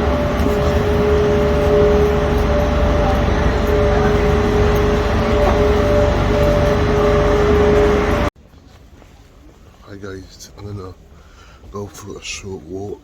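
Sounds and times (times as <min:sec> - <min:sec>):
two steady humming tones: 0:00.0 - 0:08.3
vehicle engine rumbling: 0:00.0 - 0:08.3.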